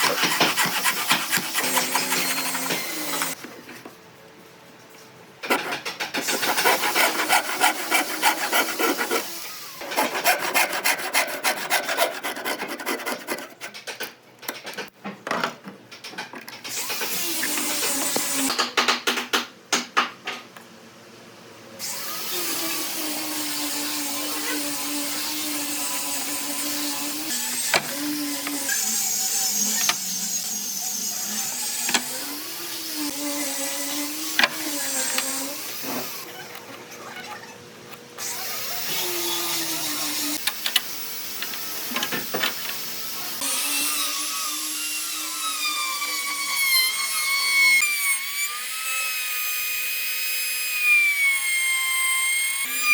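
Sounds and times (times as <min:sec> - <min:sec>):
power tool whining on wood: 0:00.0 - 0:03.4, 0:05.6 - 0:13.6.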